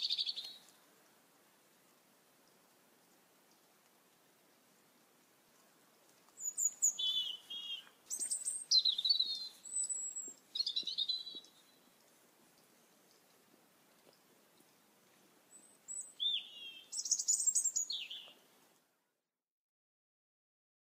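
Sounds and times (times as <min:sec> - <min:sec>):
songbird singing: 0:00.0 - 0:01.2, 0:05.5 - 0:18.6
faint background hiss: 0:00.0 - 0:19.3.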